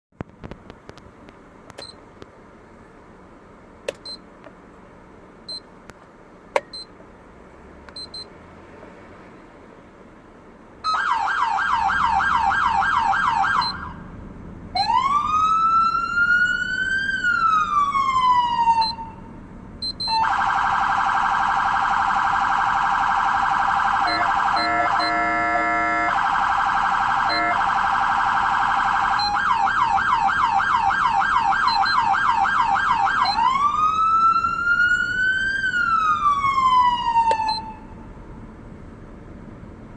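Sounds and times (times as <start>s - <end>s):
electronic siren yelping and wailing: 10.8s - 14.0s, 14.8s - 19.2s, 20.0s - 37.9s
choppy horn-like tone: 24.1s - 26.1s, 27.3s - 27.6s.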